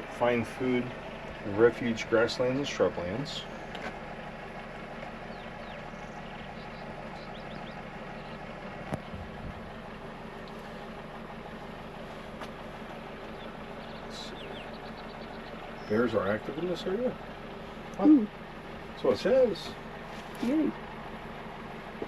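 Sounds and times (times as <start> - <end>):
engine idling: 0.0 - 22.0
faint bird chirps: 5.3 - 9.4, 13.2 - 17.2.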